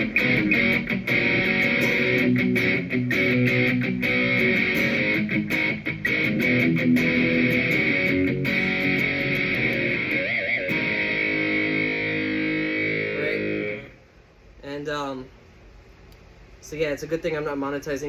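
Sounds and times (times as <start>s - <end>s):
electric guitar chords: 0.0s - 14.0s.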